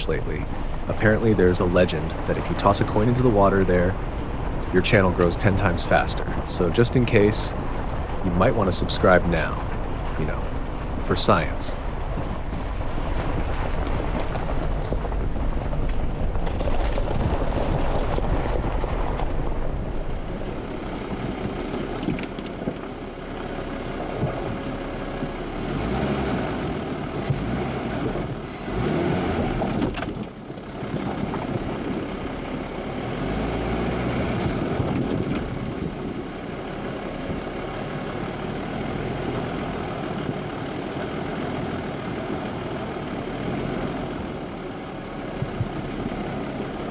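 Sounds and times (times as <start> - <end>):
road noise: 0.0 - 46.9
vehicle engine driving: 0.0 - 46.9.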